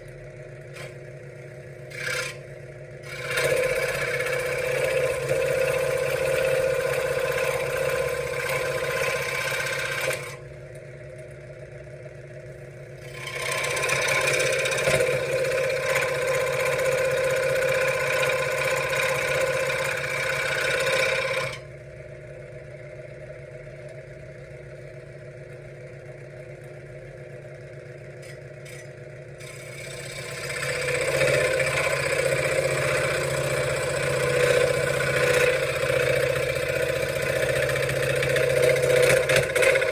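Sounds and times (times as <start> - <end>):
scroll saw cutting wood: 0.7 - 10.5, 13.0 - 21.7, 28.2 - 39.9.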